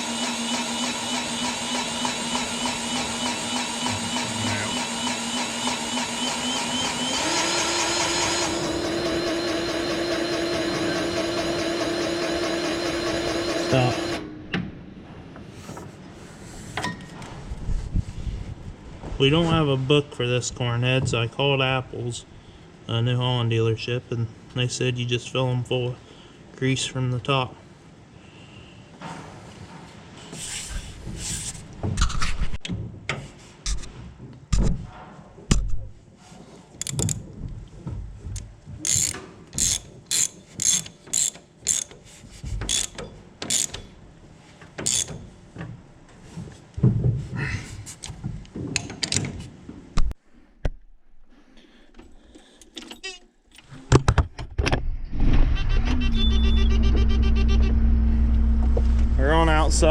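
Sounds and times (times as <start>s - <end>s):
steady low hum: 55.0s - 59.9s.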